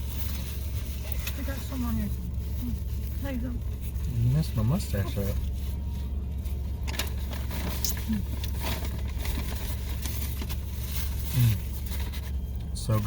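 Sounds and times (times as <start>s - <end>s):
car engine idling: 0.0s - 13.0s
food wrappers rustling: 3.8s - 13.0s.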